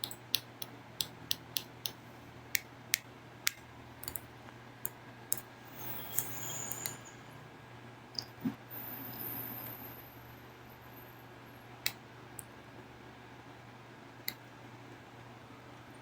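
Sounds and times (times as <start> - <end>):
small sharp clicks and taps: 0.0 - 5.5
faint low hum: 0.0 - 16.0.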